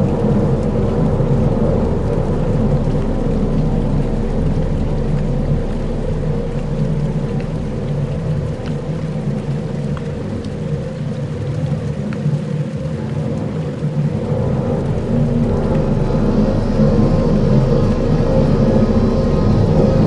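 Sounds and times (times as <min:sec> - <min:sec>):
low rumbling drone: 0:00.0 - 0:20.0
faint ticks: 0:01.7 - 0:15.9.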